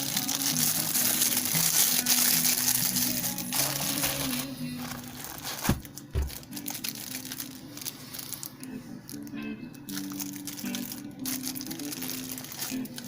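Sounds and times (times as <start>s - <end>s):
background music: 0.0s - 13.0s
packaging crinkling: 0.0s - 13.0s
soft thumps: 5.6s - 6.4s.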